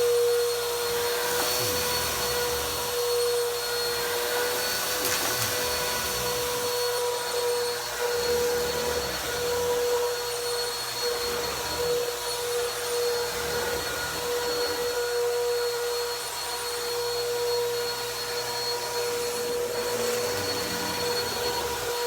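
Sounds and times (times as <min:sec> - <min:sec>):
vacuum cleaner on carpet: 0:00.0 - 0:22.0.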